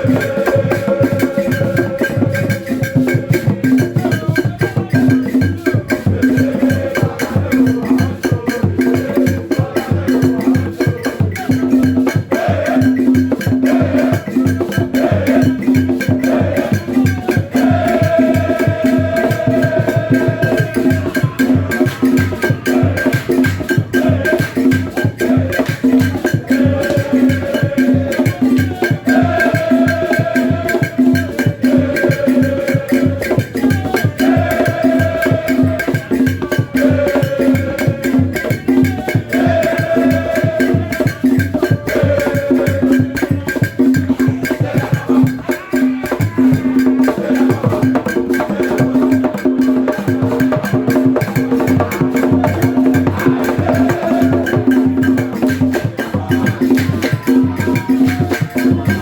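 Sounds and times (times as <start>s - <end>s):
upbeat instrumental music: 56.6s - 59.0s.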